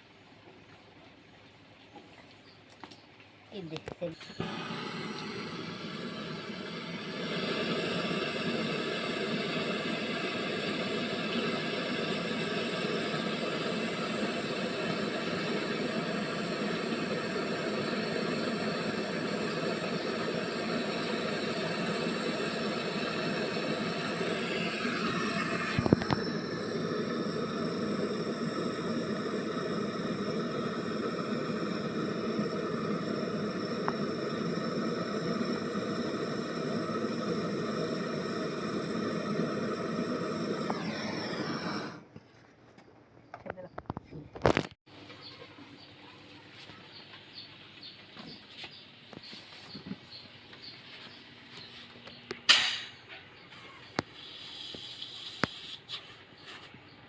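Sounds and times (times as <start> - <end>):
torch flame hissing: 4.0 - 42.1, 52.5 - 53.0, 53.6 - 56.5.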